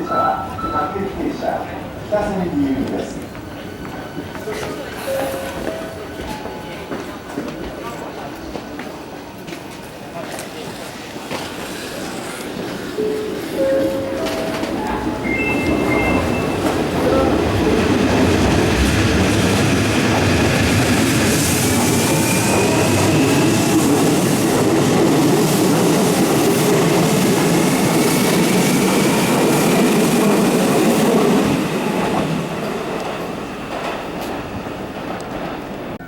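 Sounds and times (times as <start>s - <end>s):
electric train rumbling past: 9.1s - 36.0s.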